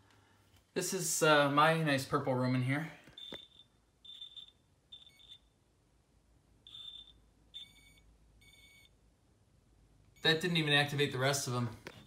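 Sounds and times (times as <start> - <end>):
smoke alarm beeping: 3.1 - 5.6, 6.6 - 9.0, 10.2 - 10.5.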